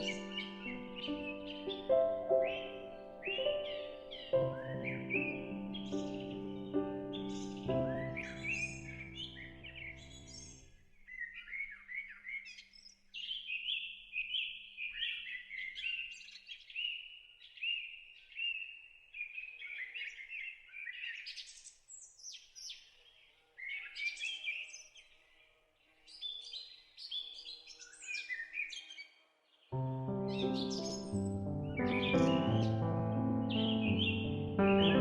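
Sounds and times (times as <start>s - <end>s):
faint soft music: 0.0s - 10.7s, 29.8s - 35.0s
small birds chirping: 0.0s - 35.0s.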